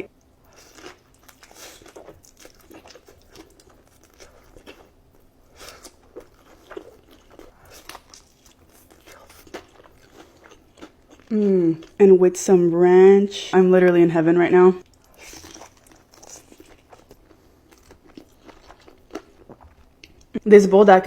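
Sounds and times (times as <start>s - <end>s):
crunchy chewing: 0.4s - 12.0s, 14.8s - 20.3s.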